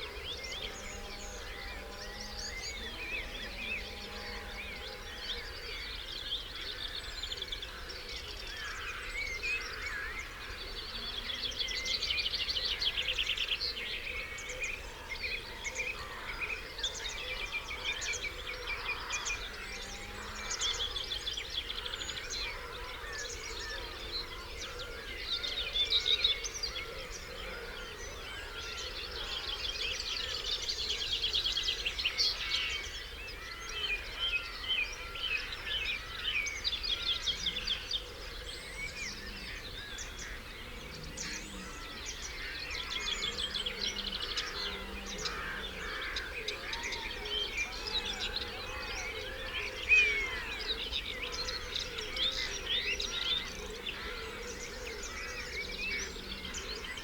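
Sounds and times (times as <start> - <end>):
songbirds singing: 0.0 - 57.0.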